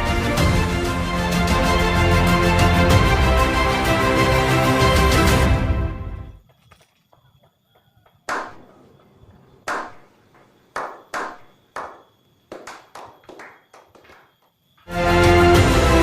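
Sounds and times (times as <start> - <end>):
sharp knocks: 8.3 - 8.7, 9.7 - 14.4.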